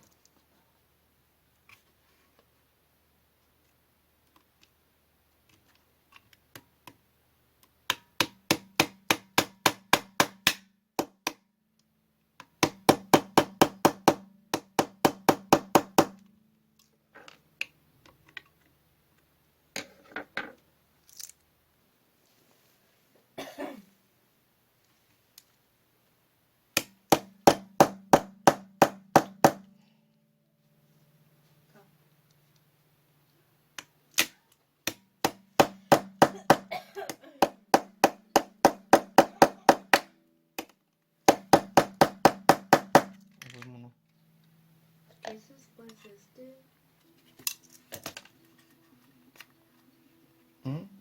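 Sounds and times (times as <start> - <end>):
soft handling noises: 0.0 - 2.7, 16.7 - 23.4, 43.2 - 50.6.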